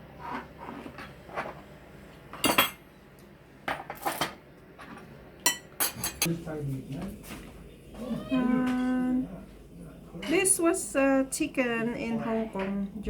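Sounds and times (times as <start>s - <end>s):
cutlery clinking on plates: 2.3s - 2.8s, 3.7s - 6.3s.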